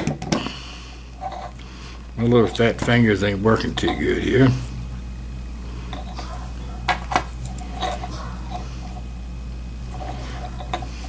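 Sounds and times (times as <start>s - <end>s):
low hum: 0.0s - 11.0s
handling noise: 5.8s - 9.2s.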